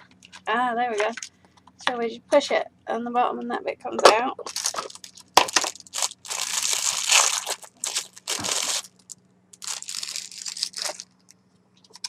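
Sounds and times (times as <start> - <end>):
plastic crinkling: 4.4 - 12.0.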